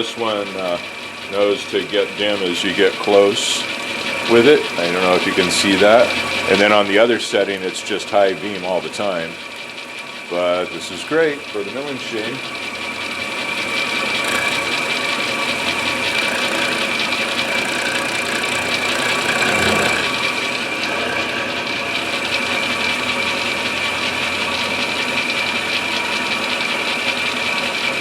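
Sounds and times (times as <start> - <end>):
milling machine cutting wood: 0.0 - 28.0.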